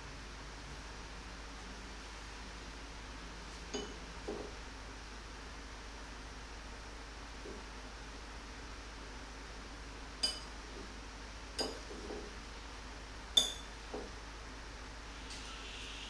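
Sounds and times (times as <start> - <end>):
tableware clinking: 3.8 - 4.0, 10.2 - 10.5, 13.4 - 13.8.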